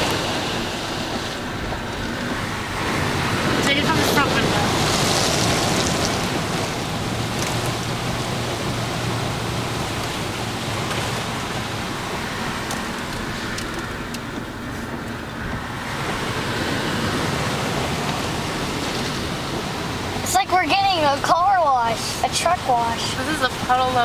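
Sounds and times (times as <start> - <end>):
low engine hum: 0.0 - 24.0
water spraying against truck: 0.0 - 24.0.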